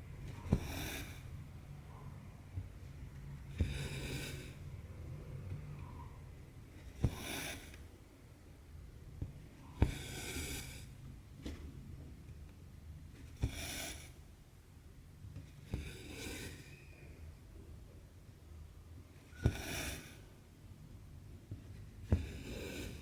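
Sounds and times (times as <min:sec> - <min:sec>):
thread rasping through fabric: 0:21.5 - 0:23.0.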